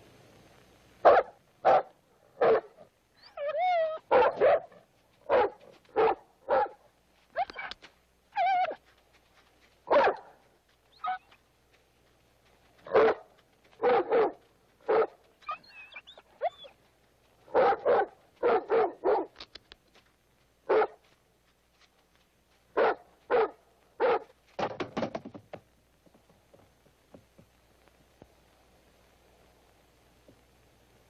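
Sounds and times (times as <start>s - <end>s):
dog barking: 1.0s - 2.9s, 4.0s - 6.8s, 9.9s - 10.4s, 12.9s - 15.2s, 17.5s - 19.4s, 20.7s - 21.0s, 22.8s - 24.3s
dog whining: 3.2s - 4.1s, 10.9s - 11.4s, 15.4s - 16.8s.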